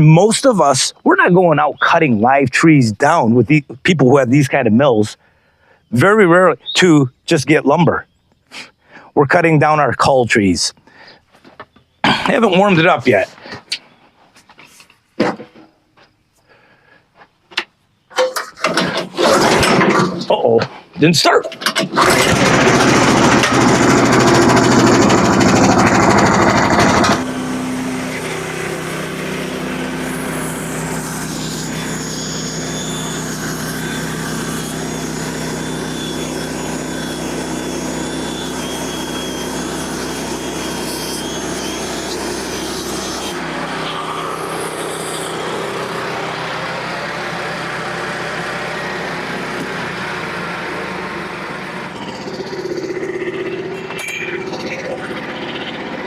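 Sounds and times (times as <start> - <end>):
small gas engine running: 18.6 - 20.3, 21.7 - 56.0
thin high whine: 51.8 - 56.0.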